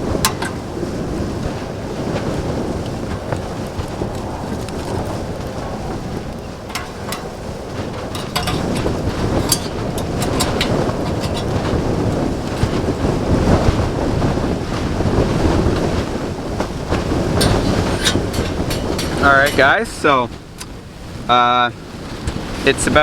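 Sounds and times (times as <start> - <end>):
wind buffeting tent: 0.0 - 23.0
sharp crackles: 1.4 - 13.5.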